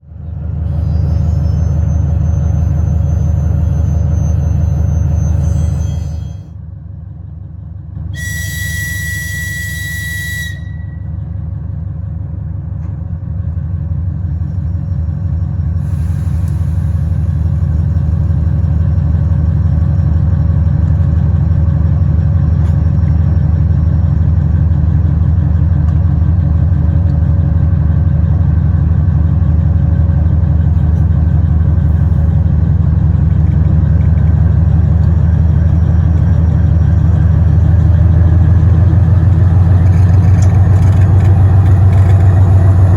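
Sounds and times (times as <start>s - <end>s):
diesel engine rumbling: 0.0s - 42.9s
locomotive whistle blast: 0.7s - 6.5s, 8.2s - 11.2s.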